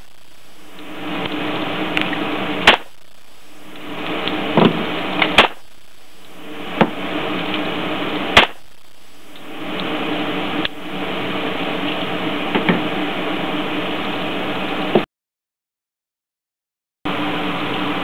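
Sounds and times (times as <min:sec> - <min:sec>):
background hiss: 0:00.0 - 0:12.2
gunshots: 0:02.6 - 0:02.9, 0:04.6 - 0:05.6, 0:08.3 - 0:08.6.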